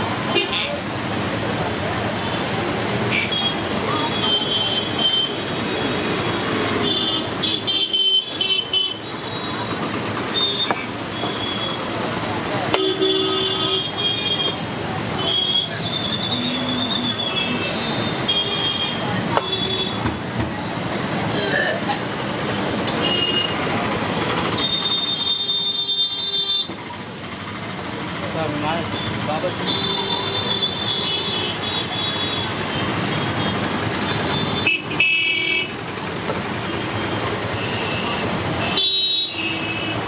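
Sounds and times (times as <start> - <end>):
traffic hum: 0.0 - 40.0
vehicle horns: 3.0 - 11.9, 12.7 - 20.5, 22.8 - 26.8, 29.2 - 35.9, 36.6 - 40.0
vehicle horn honking: 6.8 - 9.6, 12.7 - 14.6, 15.2 - 20.1, 22.8 - 23.7, 34.2 - 35.7, 37.5 - 40.0.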